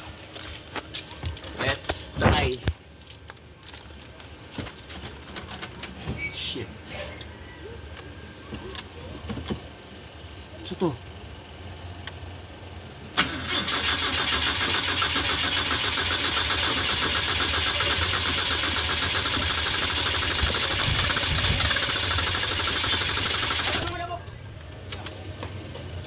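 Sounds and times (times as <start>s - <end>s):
man talking: 1.6s - 2.7s, 10.5s - 11.0s
starter motor cranking engine: 12.4s - 24.2s.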